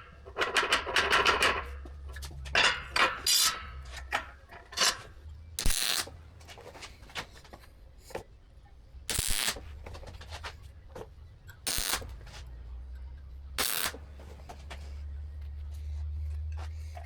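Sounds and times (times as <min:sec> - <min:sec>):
welding crackle: 0:05.6 - 0:06.2, 0:09.1 - 0:10.0, 0:11.7 - 0:12.4, 0:13.6 - 0:14.6.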